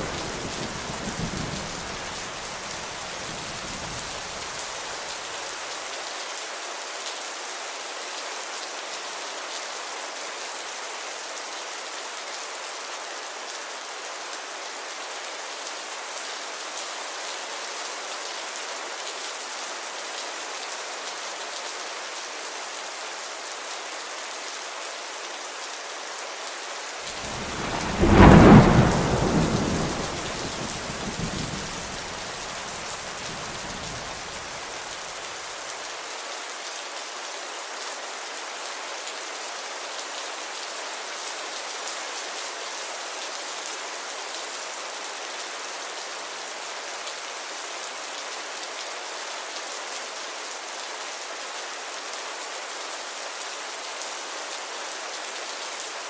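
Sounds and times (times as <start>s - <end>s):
thunderclap: 0.0s - 2.7s, 27.2s - 34.6s
steady rainfall: 0.0s - 56.0s.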